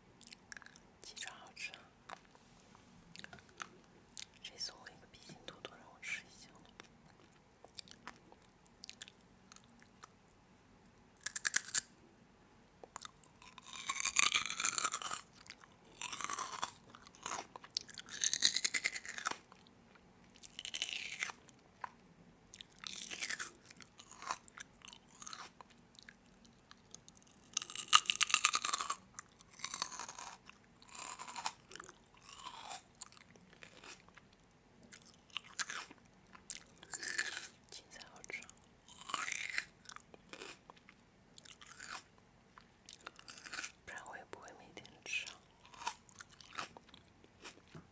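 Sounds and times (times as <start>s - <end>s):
person chewing crunchy food: 0.2s - 2.3s, 3.1s - 4.4s, 6.5s - 10.2s, 11.2s - 11.9s, 12.8s - 43.8s, 44.8s - 47.9s.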